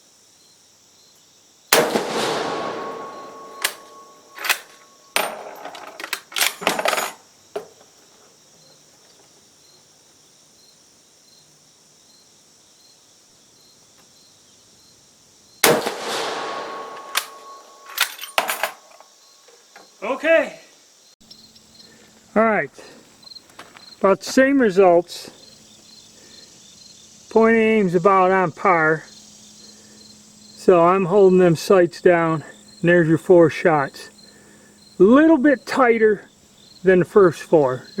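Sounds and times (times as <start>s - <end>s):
crickets chirping: 0.0s - 38.0s
rifle shots echoing: 1.7s - 5.6s, 15.6s - 18.8s.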